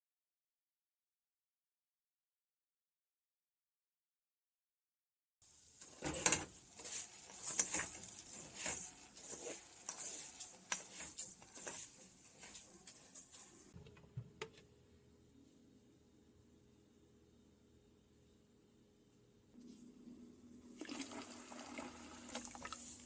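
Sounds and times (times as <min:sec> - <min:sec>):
objects rustling and clattering: 0:05.7 - 0:14.4.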